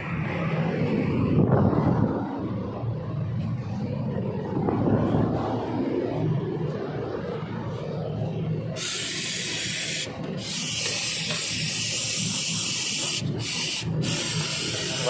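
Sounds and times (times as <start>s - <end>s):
low steady hum: 0.0s - 10.4s
pressurised gas hissing: 8.8s - 15.0s.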